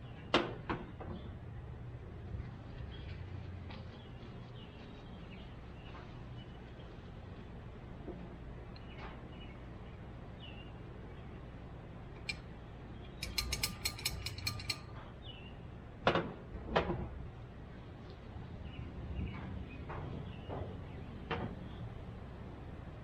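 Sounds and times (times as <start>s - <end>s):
sharp metal clicks: 12.2s - 15.2s.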